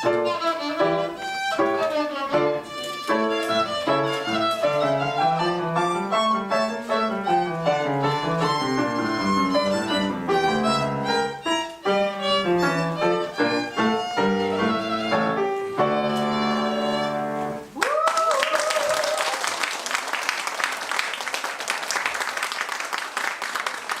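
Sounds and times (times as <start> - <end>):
violin playing: 0.0 - 17.7
piano accompaniment: 0.0 - 17.8
person whooping: 17.8 - 19.7
audience applause: 17.8 - 24.0.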